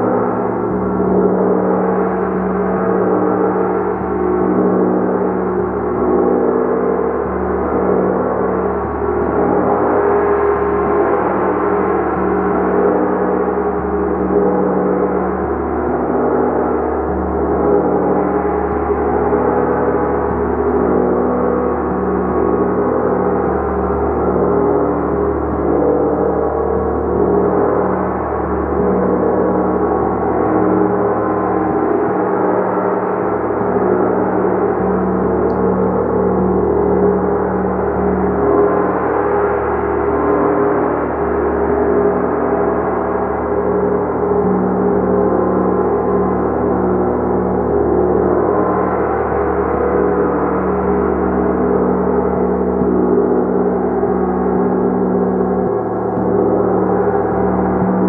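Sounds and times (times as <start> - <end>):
large gong shimmering: 0.0 - 58.0
pulsing low hum: 0.0 - 58.0.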